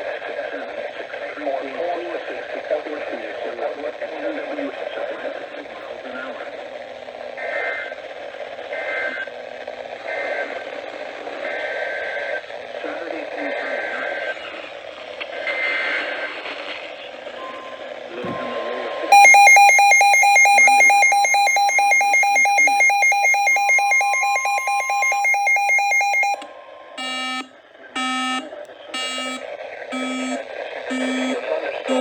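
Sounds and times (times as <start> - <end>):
rapidly pulsing alarm tone: 19.1 - 26.4, 27.0 - 32.0
slow separate beeps: 19.1 - 26.4, 29.0 - 32.0.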